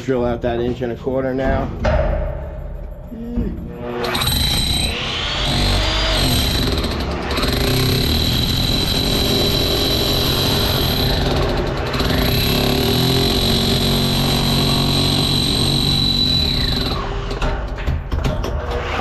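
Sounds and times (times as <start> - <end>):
rotary hammer motor whine: 3.7 - 17.2.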